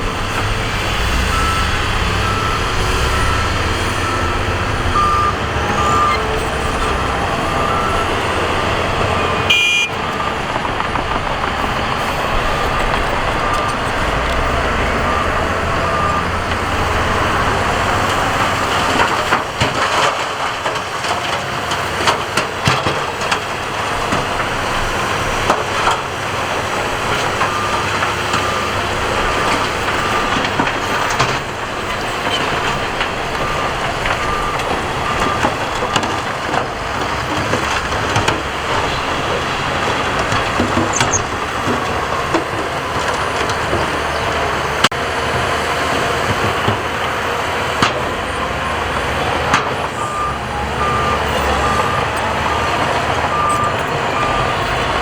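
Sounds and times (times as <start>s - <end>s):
diesel machinery running: 0.0s - 55.0s
reversing alarm beeping: 0.2s - 10.8s, 11.4s - 19.4s, 26.9s - 44.8s, 49.7s - 55.0s
knocks and clanks: 10.0s - 45.4s.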